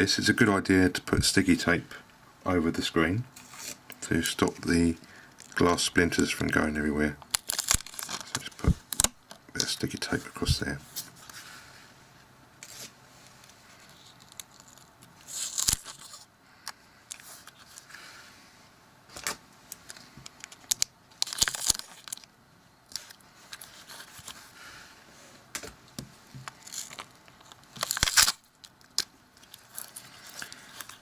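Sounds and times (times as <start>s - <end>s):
small clicks and handling noise: 12.6s - 17.9s, 19.1s - 22.3s.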